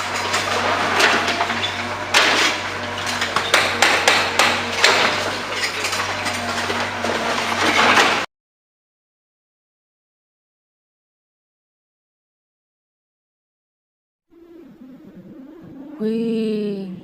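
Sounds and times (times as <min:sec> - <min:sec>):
hard objects knocking and clinking: 0:00.1 - 0:08.2
steady low hum: 0:14.3 - 0:17.0.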